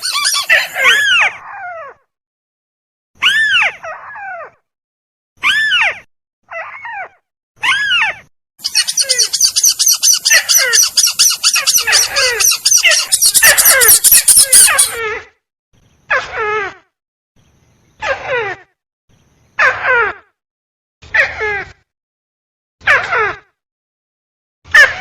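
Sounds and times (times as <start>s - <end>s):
rapid high bird chatter: 0.0s - 1.0s, 8.6s - 15.0s.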